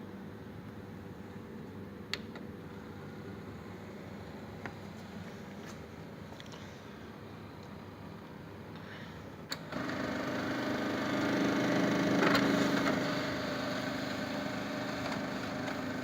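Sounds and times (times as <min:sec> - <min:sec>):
printer motor humming: 0:09.6 - 0:16.0.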